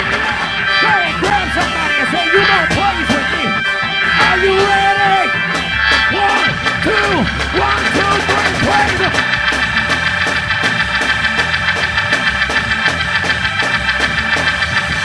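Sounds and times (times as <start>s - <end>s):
voices shouting and singing: 0.0s - 9.3s
live band playing praise music: 0.0s - 15.0s.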